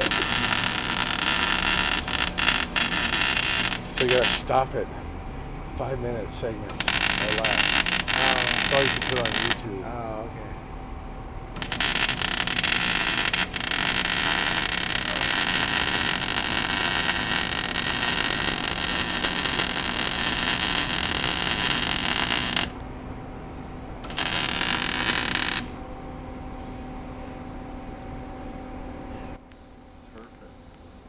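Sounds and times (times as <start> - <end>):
arc welder crackling: 0.0 - 4.6, 6.6 - 9.8, 11.5 - 22.9, 24.0 - 25.8.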